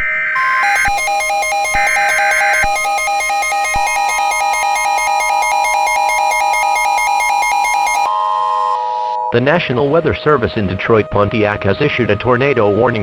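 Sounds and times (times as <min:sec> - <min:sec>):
fast-pulsing alarm beep: 0:00.4 - 0:08.8
steady alert tone: 0:00.4 - 0:08.8
warbling data bursts: 0:00.4 - 0:08.8.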